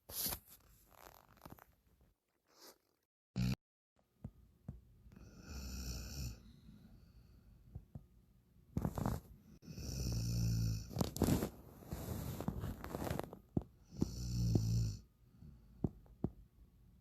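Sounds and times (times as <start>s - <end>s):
person snoring: 3.4s - 3.6s, 5.2s - 6.7s, 8.8s - 15.1s.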